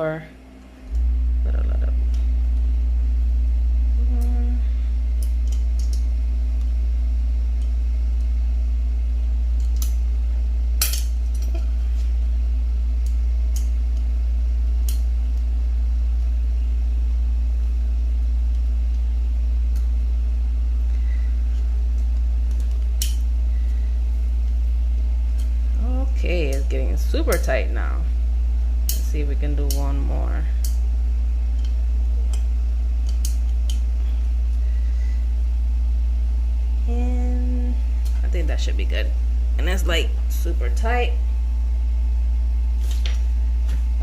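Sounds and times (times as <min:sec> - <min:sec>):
loud steady low hum: 0:00.0 - 0:44.0.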